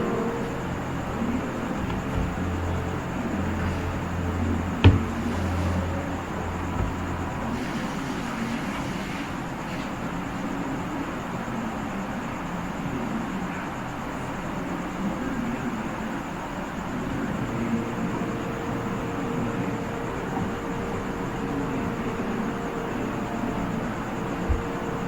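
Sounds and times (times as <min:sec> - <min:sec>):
low hum: 0:00.0 - 0:07.9.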